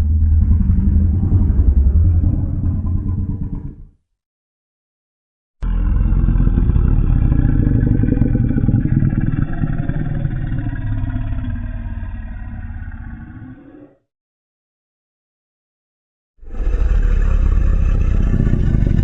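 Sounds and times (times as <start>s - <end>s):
deep rough monster growl: 0.0s - 4.0s, 5.6s - 14.1s, 16.4s - 19.0s.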